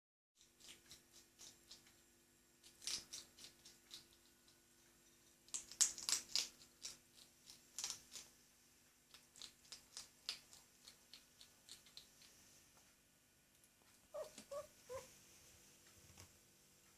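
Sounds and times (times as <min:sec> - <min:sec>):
hedgehog chewing clicks: 0:00.4 - 0:02.0, 0:02.6 - 0:04.6, 0:05.5 - 0:08.3, 0:09.1 - 0:12.4.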